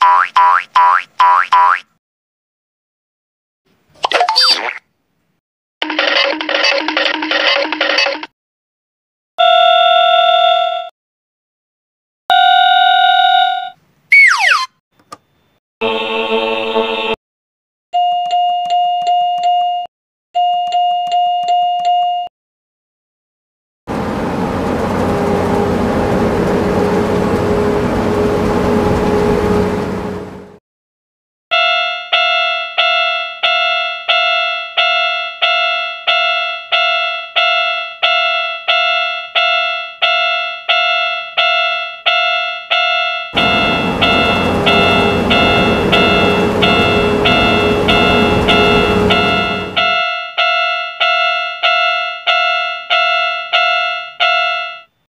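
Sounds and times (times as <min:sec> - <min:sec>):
railroad crossing bells ringing: 0:31.6 - 0:54.9.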